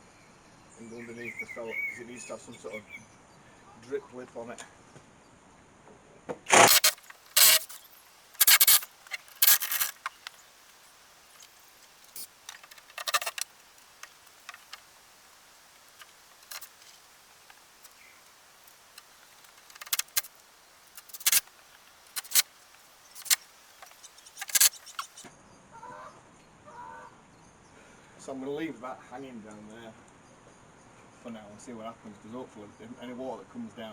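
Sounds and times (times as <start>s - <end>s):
scraping and rattling: 6.5s - 10.4s, 11.4s - 14.9s, 21.0s - 25.2s.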